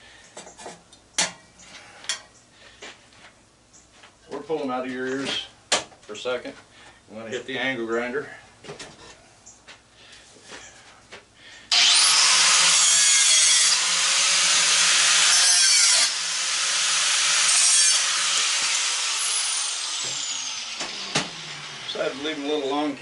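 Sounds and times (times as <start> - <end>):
angle grinder cutting metal: 11.7 - 23.0.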